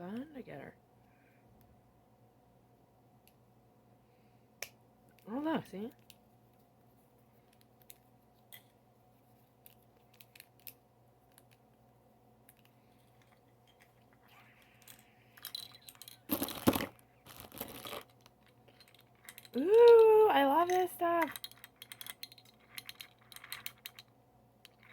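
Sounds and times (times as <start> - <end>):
crinkling and rustling: 12.5 - 24.1
plastic toys clicking: 14.6 - 24.9.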